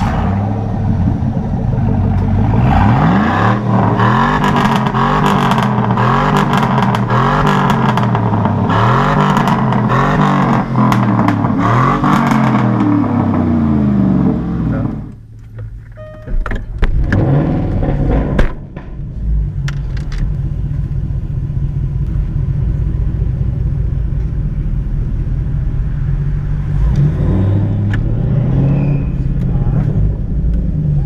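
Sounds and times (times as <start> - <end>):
car engine revving and droning: 0.0 - 15.2, 16.0 - 31.0
car exhaust pops: 3.5 - 8.5, 9.1 - 12.9.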